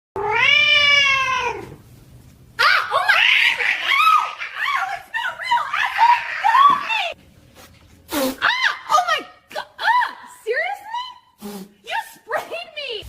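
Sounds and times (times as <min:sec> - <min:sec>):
cat meowing and yowling: 0:00.2 - 0:01.8.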